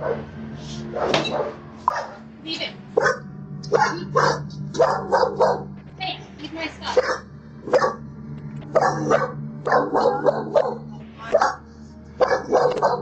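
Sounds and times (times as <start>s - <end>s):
dog barking: 1.0s - 2.2s, 3.0s - 5.7s, 6.9s - 8.0s, 8.7s - 13.0s.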